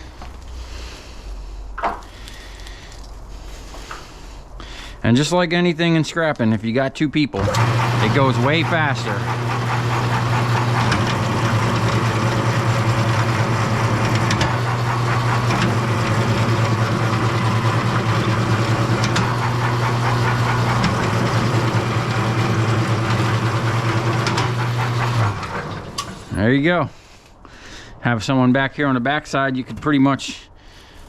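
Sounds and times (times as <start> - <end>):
wire-stripping machine humming: 7.4 - 26.3.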